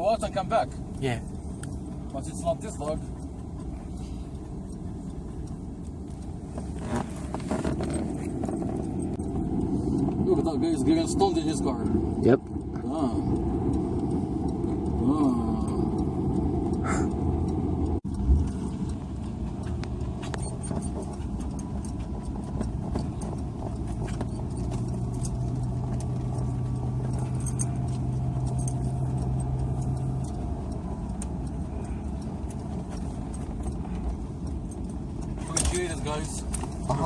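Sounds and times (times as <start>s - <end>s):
car engine and road noise: 0.0s - 37.0s
small rattling clicks: 0.2s - 9.5s, 18.2s - 37.0s.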